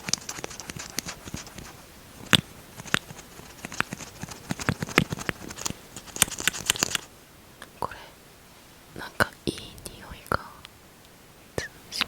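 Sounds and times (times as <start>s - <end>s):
wet lip smacks: 0.0s - 7.1s.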